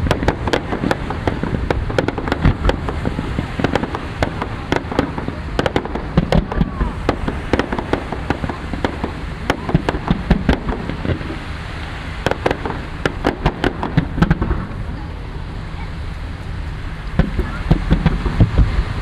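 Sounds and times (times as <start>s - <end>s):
fireworks bangs and crackles: 0.0s - 19.0s
low rumble: 0.0s - 19.0s.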